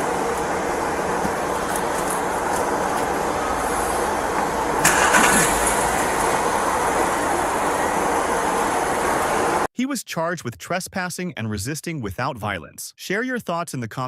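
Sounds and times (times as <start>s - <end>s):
motor vehicle rumble: 0.0s - 9.7s.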